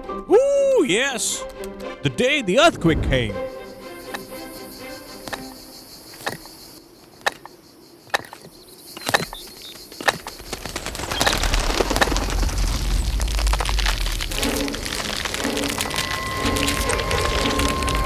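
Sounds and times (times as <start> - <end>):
dense rattling and crackling: 9.6 - 18.0
deep rumble: 10.4 - 18.0.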